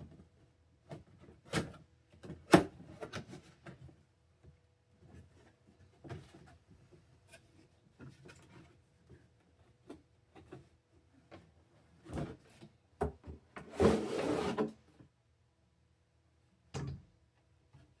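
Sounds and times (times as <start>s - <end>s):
cardboard box rustling and scraping: 13.7s - 14.8s.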